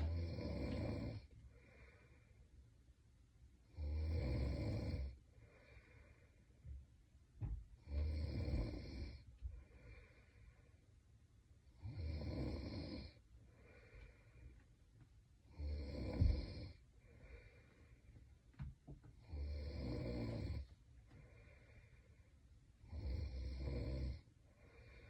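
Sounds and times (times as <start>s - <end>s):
woman snoring: 0.0s - 1.3s, 3.7s - 5.2s, 7.8s - 9.2s, 11.8s - 13.2s, 15.5s - 17.5s, 19.2s - 20.6s, 22.8s - 25.0s
soft breaths: 0.0s - 2.9s, 5.0s - 11.8s, 13.0s - 19.4s, 20.4s - 25.0s.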